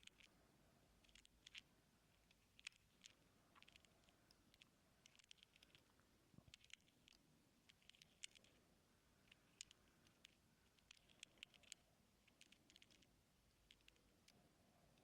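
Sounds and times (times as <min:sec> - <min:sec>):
ear-cleaning tool clicks and scratches: 0:01.0 - 0:05.8, 0:06.5 - 0:08.5, 0:09.3 - 0:14.4.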